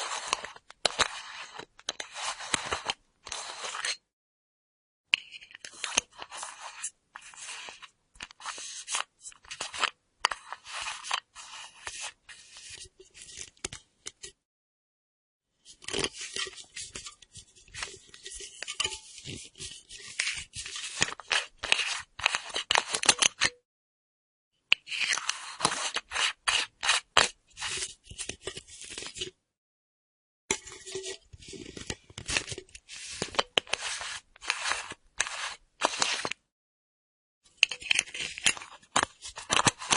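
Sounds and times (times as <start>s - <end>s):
screw cap scraping and clicking: 37.6s - 39.9s.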